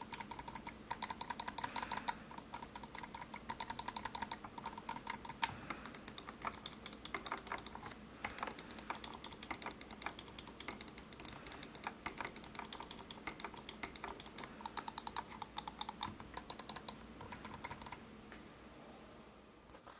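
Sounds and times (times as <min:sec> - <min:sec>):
mouse buttons clicking: 0:00.0 - 0:18.0.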